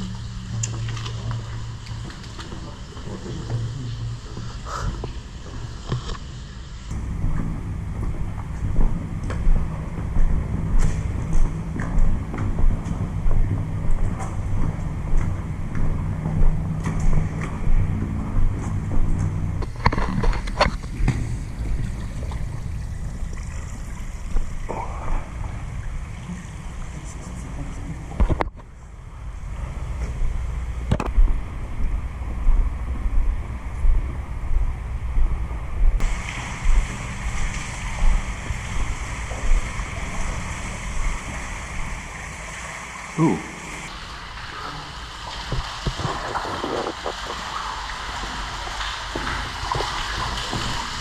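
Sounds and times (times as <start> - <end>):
water running and sloshing: 0.0 - 6.9, 18.9 - 28.2, 36.0 - 51.0
footsteps in concrete tunnel: 0.0 - 22.9, 23.9 - 42.2
steady low rumble: 0.0 - 51.0.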